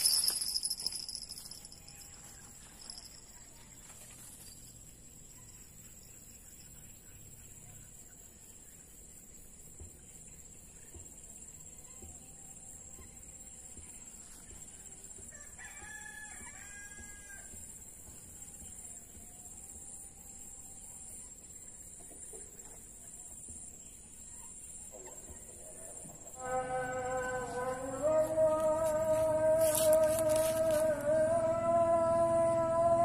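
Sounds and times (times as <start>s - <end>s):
rooster crowing: 15.3s - 17.6s, 26.4s - 33.0s.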